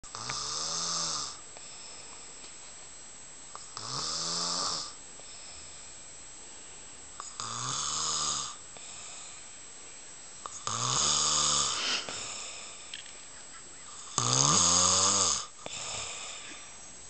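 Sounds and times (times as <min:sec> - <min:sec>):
man snoring loudly: 0:00.1 - 0:01.4, 0:03.8 - 0:05.0, 0:07.2 - 0:09.0, 0:10.5 - 0:12.8, 0:13.9 - 0:16.7
quiet breathing: 0:01.2 - 0:02.8, 0:04.8 - 0:07.4, 0:08.5 - 0:14.2, 0:15.4 - 0:17.0.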